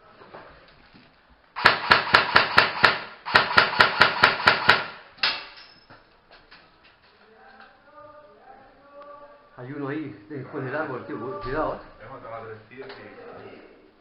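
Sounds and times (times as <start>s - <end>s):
airsoft gun shots: 1.6s - 5.4s.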